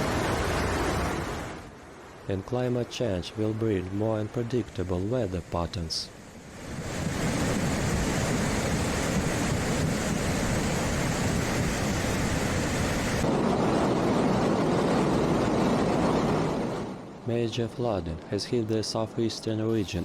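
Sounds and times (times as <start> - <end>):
water rushing: 0.0 - 13.3.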